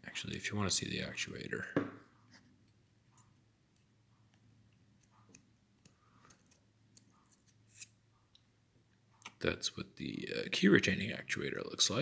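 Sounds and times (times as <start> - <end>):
faint clicks of padlock parts: 2.6 - 8.4.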